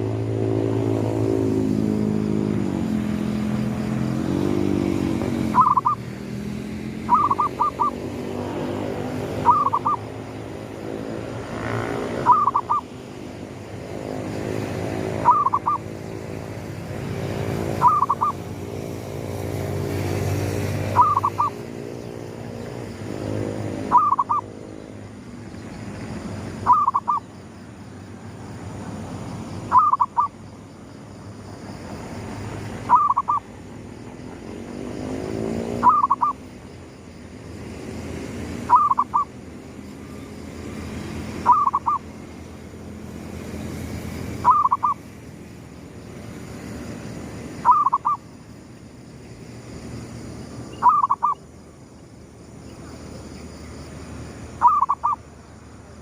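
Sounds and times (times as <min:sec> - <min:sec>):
dove cooing: 0:05.5 - 0:06.0, 0:07.1 - 0:08.0, 0:09.3 - 0:10.1, 0:12.2 - 0:12.9, 0:15.2 - 0:15.9, 0:17.8 - 0:18.4, 0:21.0 - 0:21.6, 0:23.8 - 0:24.5, 0:26.6 - 0:27.2, 0:29.7 - 0:30.3, 0:32.9 - 0:33.4, 0:35.8 - 0:36.4, 0:38.7 - 0:39.3, 0:41.4 - 0:42.1, 0:44.4 - 0:45.0, 0:47.6 - 0:48.2, 0:50.8 - 0:51.4, 0:54.6 - 0:55.2.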